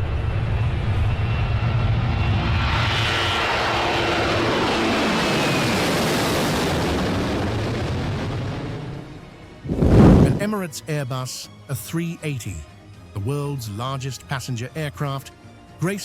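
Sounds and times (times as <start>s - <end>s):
jet engines at takeoff power: 0.0s - 10.4s.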